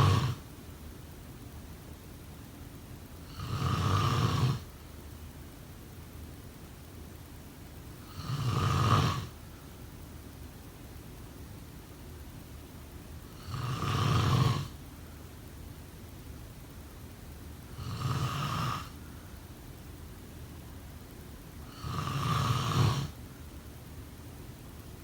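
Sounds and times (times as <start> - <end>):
person snoring: 0.0 - 0.4, 3.3 - 4.7, 8.1 - 9.3, 13.4 - 14.8, 17.8 - 19.0, 21.7 - 23.2.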